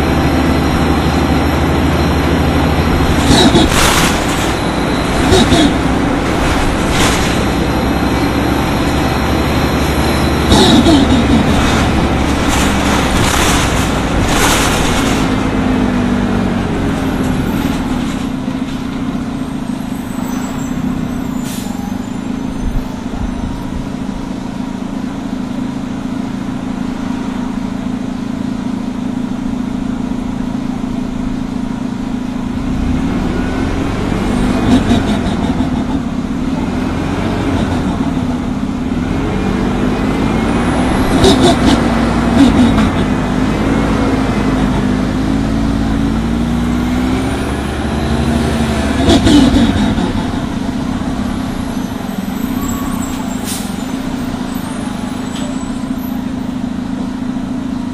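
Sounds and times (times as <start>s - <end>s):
bus engine running: 0.0s - 57.9s
air brakes hissing: 20.0s - 23.0s, 51.9s - 56.0s.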